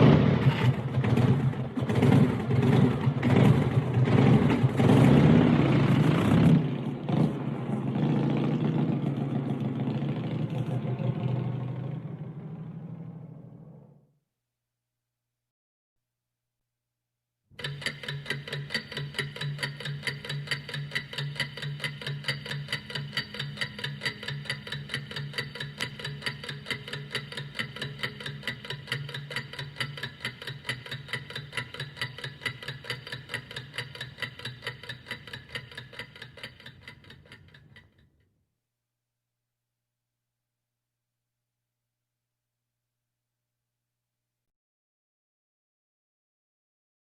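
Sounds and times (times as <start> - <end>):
rapid mechanical ticking: 0.0 - 11.2, 17.6 - 38.2.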